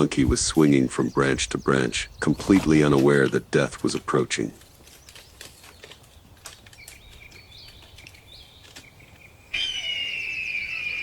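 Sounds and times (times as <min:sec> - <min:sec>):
faint chirps and ticks: 0:03.2 - 0:09.5
high-pitched animal call: 0:09.5 - 0:11.0.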